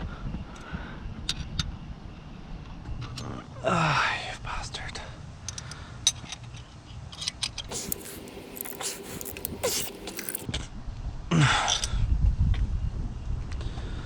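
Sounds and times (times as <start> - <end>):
metal tools clicking and scraping: 7.7 - 10.5.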